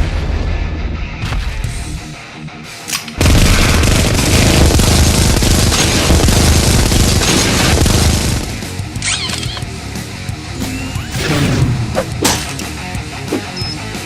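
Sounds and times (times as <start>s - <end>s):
rapid gunfire: 3.2s - 8.8s.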